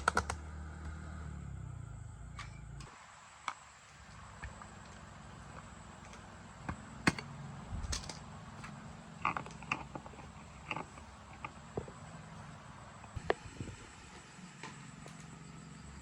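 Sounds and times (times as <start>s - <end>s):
tools clicking and tapping on metal parts: 6.0s - 12.0s.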